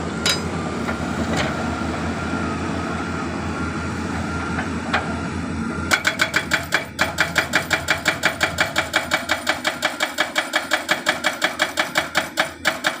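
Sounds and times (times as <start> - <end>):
hydraulic breaker hammering: 0.2 - 1.5, 5.9 - 13.0.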